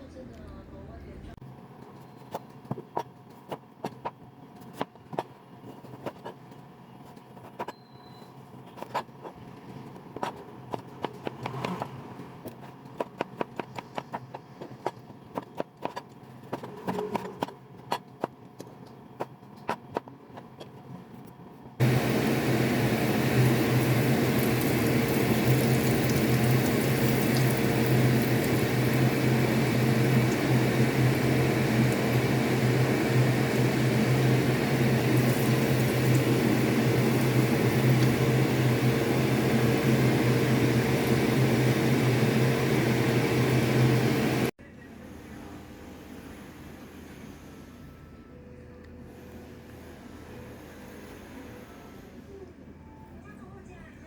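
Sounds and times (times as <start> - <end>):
kitchen appliance fan humming: 21.7 - 48.0.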